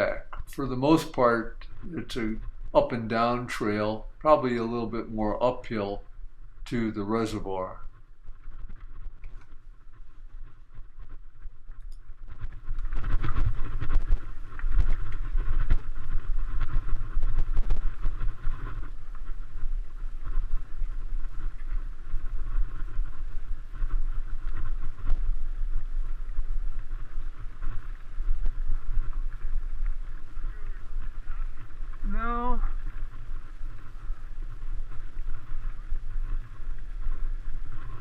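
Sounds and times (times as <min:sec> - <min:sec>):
wind on microphone: 0:00.0 - 0:38.0.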